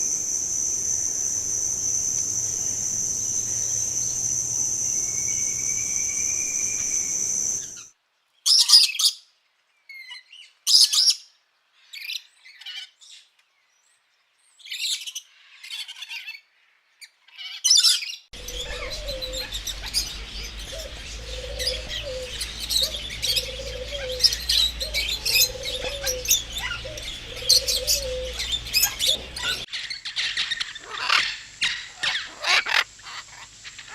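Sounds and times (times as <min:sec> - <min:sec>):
low repeated bird call: 0:00.0 - 0:07.9, 0:18.4 - 0:29.7
small birds chirping: 0:00.0 - 0:07.9, 0:18.0 - 0:33.9.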